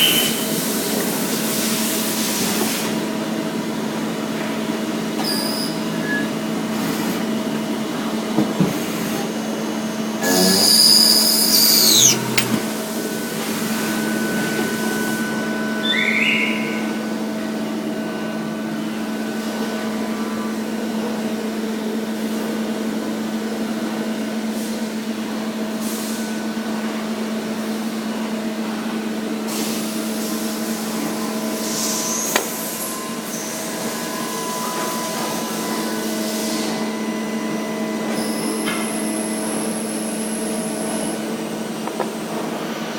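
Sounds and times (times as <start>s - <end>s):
lathe machine hum: 9.4s - 15.9s
rising whine: 10.2s - 17.4s.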